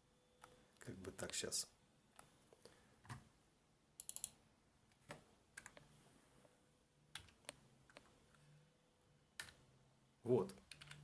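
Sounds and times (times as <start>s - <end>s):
quiet keyboard keystrokes: 4.0s - 5.9s, 7.1s - 8.4s, 9.4s - 9.6s, 10.4s - 11.0s.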